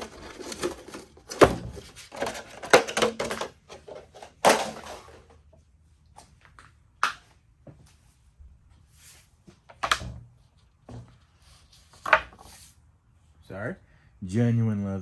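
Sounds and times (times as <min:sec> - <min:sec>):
scraping and rustling: 0:00.0 - 0:05.4.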